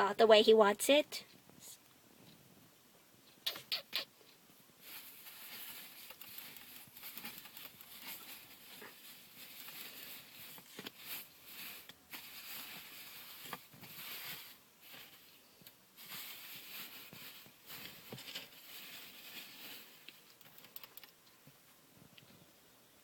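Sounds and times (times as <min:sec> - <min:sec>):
hamster rustling in bedding: 0:04.8 - 0:15.3, 0:16.0 - 0:20.1.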